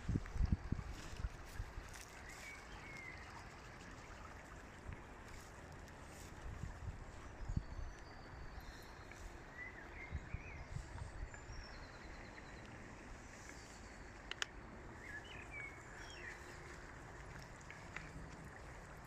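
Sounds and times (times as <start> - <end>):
steady outdoor hiss: 0.0 - 19.0
songbirds singing and chirping: 1.9 - 3.8, 6.1 - 17.1.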